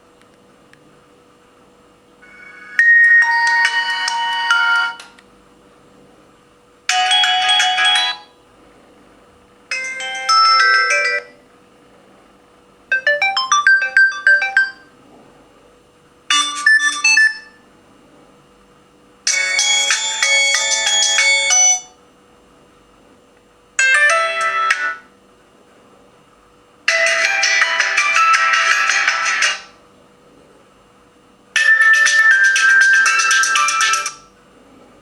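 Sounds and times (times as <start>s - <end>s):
short electronic ringtone melodies: 12.9s - 14.9s, 16.3s - 17.5s, 19.3s - 21.9s, 31.6s - 34.2s.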